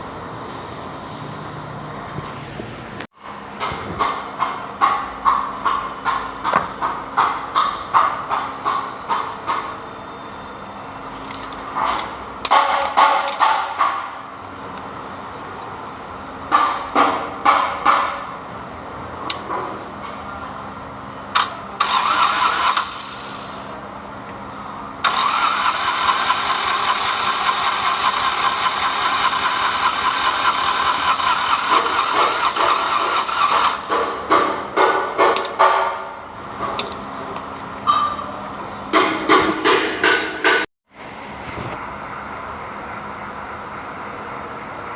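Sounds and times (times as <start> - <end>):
diesel engine cranking: 21.3 - 23.7, 25.0 - 34.3.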